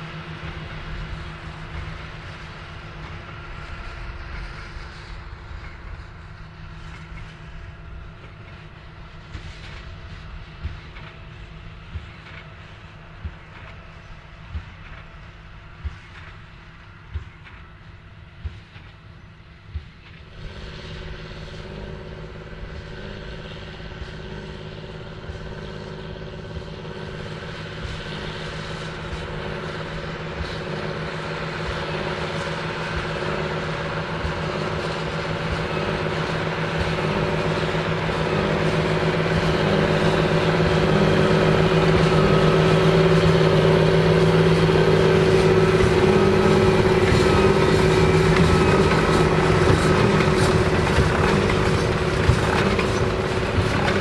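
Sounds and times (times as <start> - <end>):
tractor engine running under load: 0.0 - 54.0
baler rapid mechanical clatter: 24.0 - 54.0.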